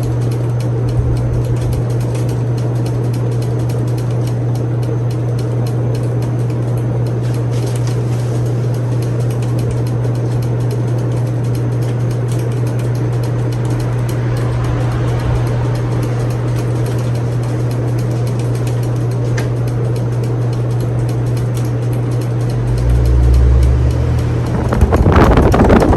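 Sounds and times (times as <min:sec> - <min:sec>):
ceiling fan motor hum: 0:00.0 - 0:25.9
air noise: 0:12.2 - 0:18.5, 0:22.0 - 0:25.9.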